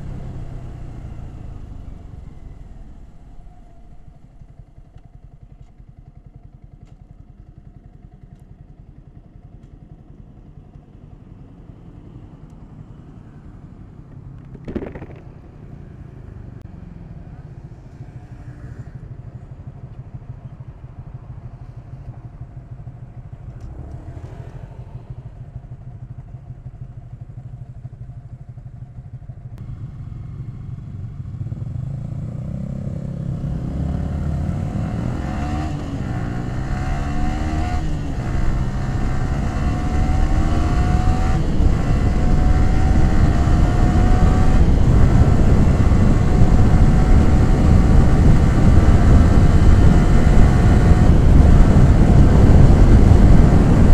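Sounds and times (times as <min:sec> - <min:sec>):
motorcycle engine accelerating: 0:00.0 - 0:53.9.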